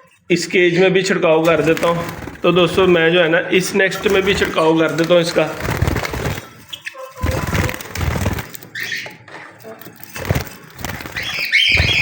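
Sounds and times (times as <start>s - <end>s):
budgerigars chirping: 1.5s - 9.2s, 10.9s - 12.0s.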